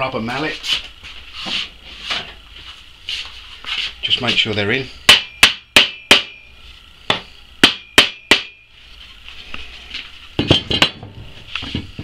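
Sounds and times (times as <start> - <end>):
rubber mallet striking wood: 5.1 - 6.4, 7.1 - 8.6.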